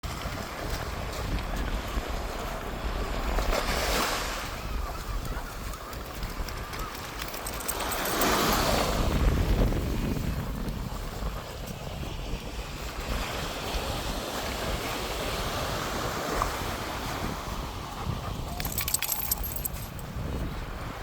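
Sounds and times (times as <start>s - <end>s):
wind buffeting microphone: 4.4s - 21.0s
metallic jingling clicks: 6.9s - 8.9s, 18.6s - 20.1s.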